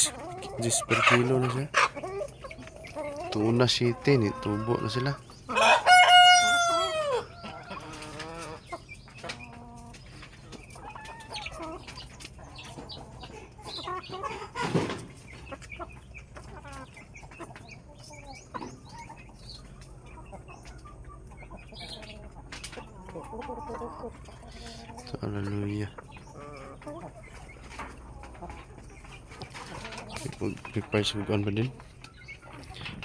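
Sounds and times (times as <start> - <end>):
chickens clucking: 0.0 - 33.0
rooster crowing: 5.5 - 7.6.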